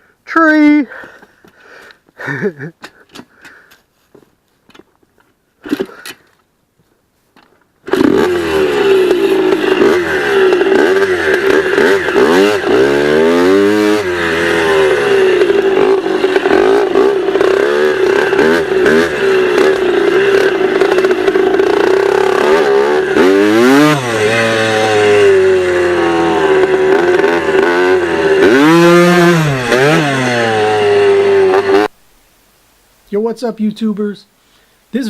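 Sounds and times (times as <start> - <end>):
dirt bike engine revving: 7.8 - 32.0.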